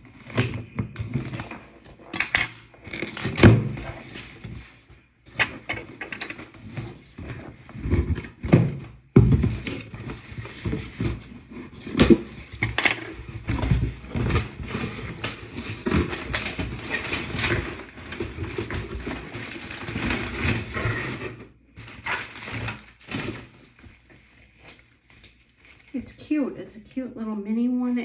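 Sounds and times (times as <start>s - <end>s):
packaging rustling and crinkling: 0.0s - 26.2s.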